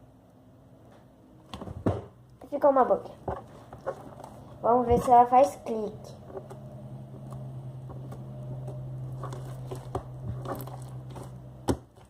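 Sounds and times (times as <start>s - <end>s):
low hum: 5.6s - 11.8s.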